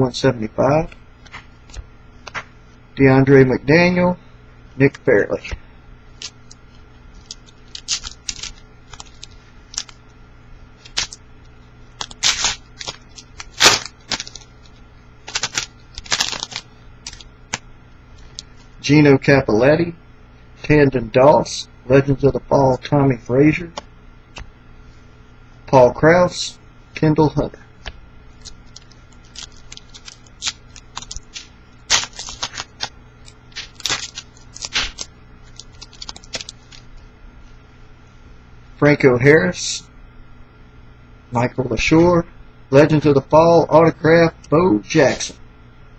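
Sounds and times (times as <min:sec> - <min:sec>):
cards being handled: 0:00.9 - 0:02.5, 0:06.2 - 0:10.1, 0:10.8 - 0:18.7, 0:27.8 - 0:37.0
wrapper crinkling and tearing: 0:06.2 - 0:10.0, 0:10.8 - 0:11.2, 0:11.9 - 0:17.6, 0:28.4 - 0:37.0.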